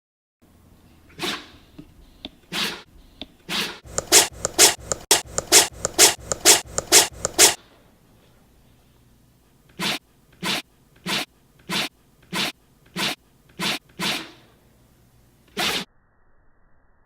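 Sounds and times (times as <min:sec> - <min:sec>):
dog sneezing: 0:01.1 - 0:01.6, 0:02.5 - 0:02.9, 0:09.8 - 0:14.5.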